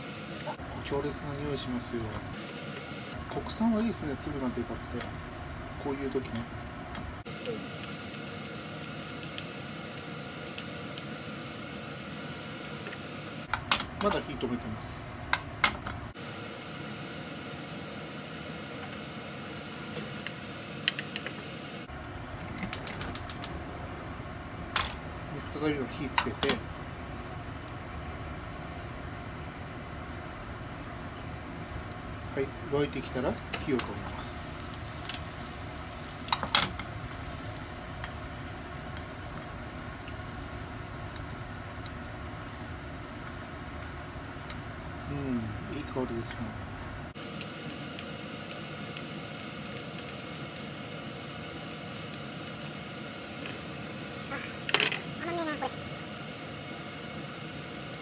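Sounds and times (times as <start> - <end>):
garlic sizzling in oil: 0.0 - 19.8, 22.2 - 54.4
faint steady hiss: 13.4 - 16.9, 22.8 - 54.4
gas stove igniter clicking: 22.6 - 23.6.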